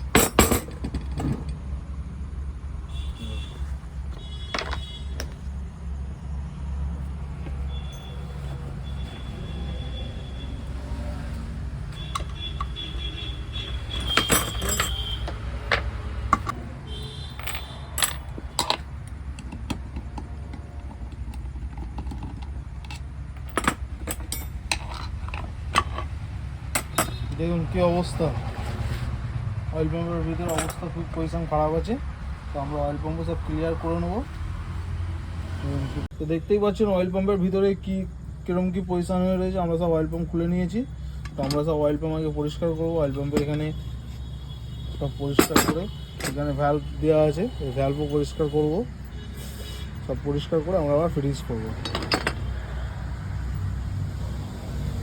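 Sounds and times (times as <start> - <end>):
metal tools clinking and scraping: 0.0 - 1.6, 3.5 - 5.6, 11.9 - 29.1, 30.1 - 31.4, 41.0 - 44.2, 45.2 - 52.5.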